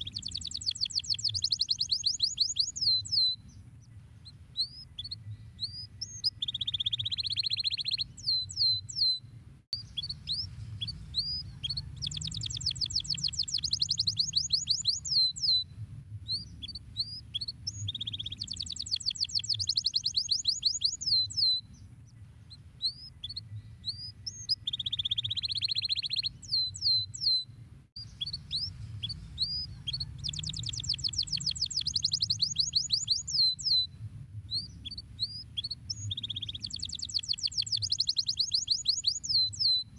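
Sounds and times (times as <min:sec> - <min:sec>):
canary singing: 0:00.0 - 0:09.2, 0:09.8 - 0:15.7, 0:16.3 - 0:33.9, 0:34.5 - 0:39.9
steady low hum: 0:15.3 - 0:18.7, 0:27.4 - 0:30.8.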